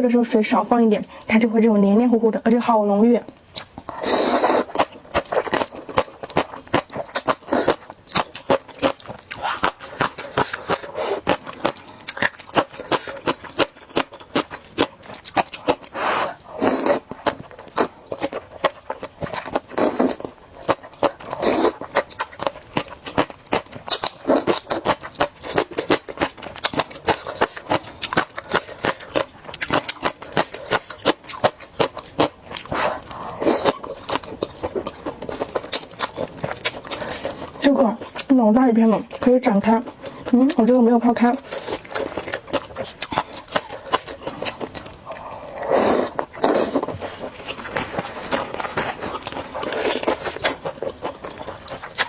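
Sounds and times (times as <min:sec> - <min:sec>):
chewing: 0:03.3 - 0:52.0
person slurping noodles: 0:03.9 - 0:04.9, 0:15.9 - 0:17.1, 0:21.3 - 0:21.9, 0:45.0 - 0:50.7.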